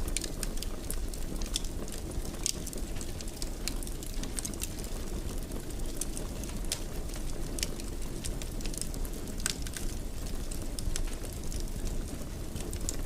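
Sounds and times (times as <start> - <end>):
wood fire crackling: 0.0 - 13.0.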